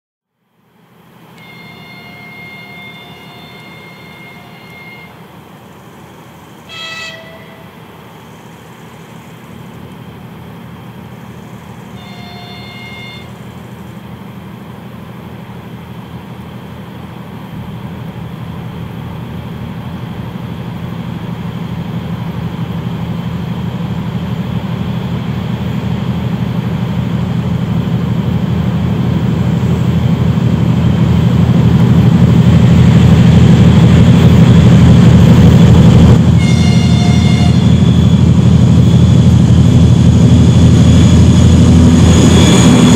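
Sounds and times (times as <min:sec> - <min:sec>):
diesel locomotive engine drone: 0:00.3 - 0:42.9
locomotive horn: 0:01.4 - 0:05.3, 0:06.6 - 0:07.8, 0:11.8 - 0:13.7, 0:36.0 - 0:38.4.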